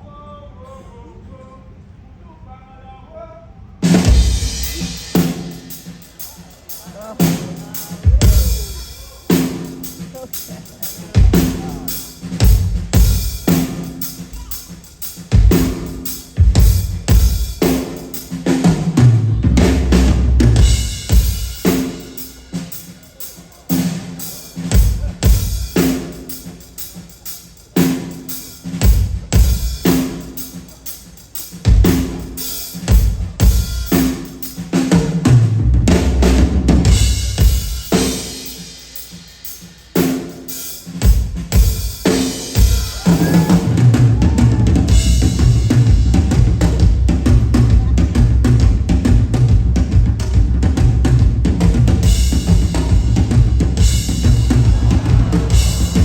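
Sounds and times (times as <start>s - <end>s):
heavy bass drum hits: 3.9s - 6.0s, 41.0s - 56.0s.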